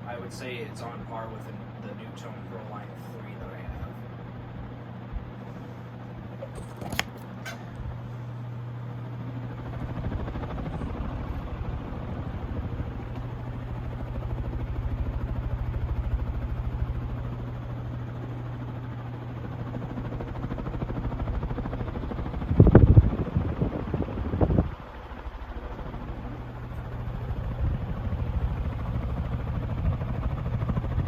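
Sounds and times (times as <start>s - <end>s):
ceiling fan running: 0.0s - 31.0s.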